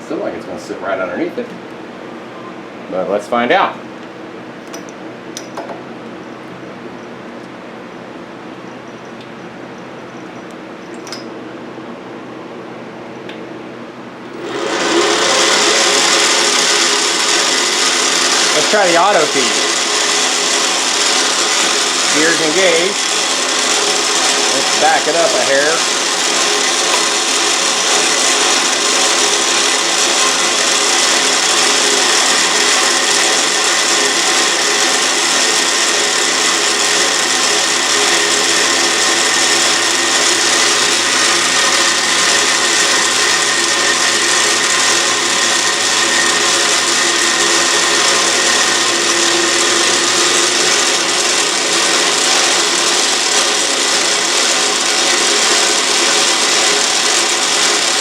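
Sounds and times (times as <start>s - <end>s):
lathe cutting plastic: 14.3s - 58.0s.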